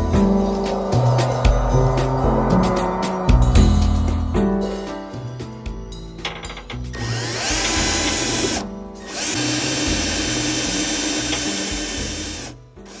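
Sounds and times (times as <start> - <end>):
power drill whining: 7.0 - 13.0.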